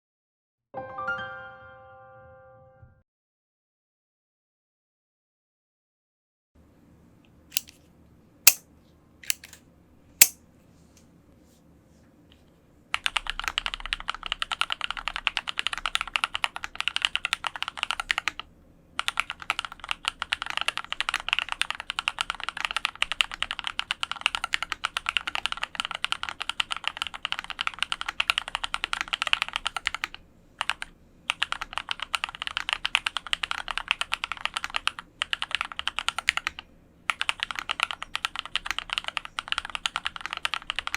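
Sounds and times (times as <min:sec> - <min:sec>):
fast mechanical keyboard typing: 0:12.9 - 0:40.9.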